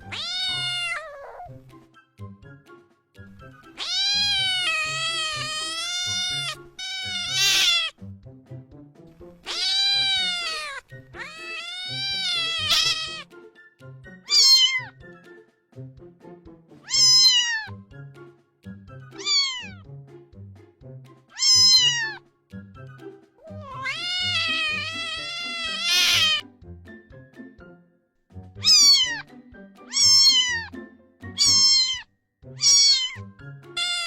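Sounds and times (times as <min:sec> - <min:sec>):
cat meowing: 0:00.0 - 0:01.6, 0:03.6 - 0:08.0, 0:09.4 - 0:13.3, 0:14.2 - 0:15.0, 0:16.8 - 0:17.8, 0:19.2 - 0:19.8, 0:21.3 - 0:22.2, 0:23.4 - 0:26.4, 0:28.6 - 0:29.3, 0:29.9 - 0:30.8, 0:31.4 - 0:34.0
soft background music: 0:00.0 - 0:34.0.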